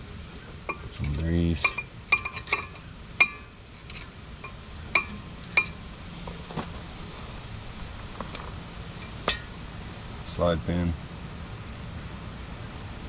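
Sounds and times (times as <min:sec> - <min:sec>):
small metal parts clinking: 0:00.7 - 0:05.8.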